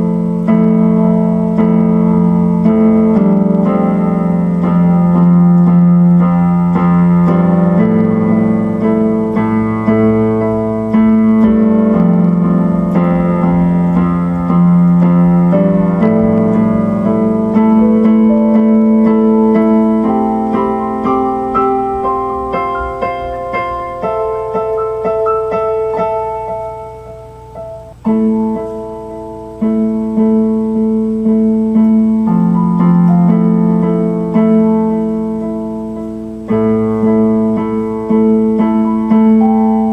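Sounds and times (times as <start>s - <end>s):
electric keyboard chords: 0.0s - 39.9s.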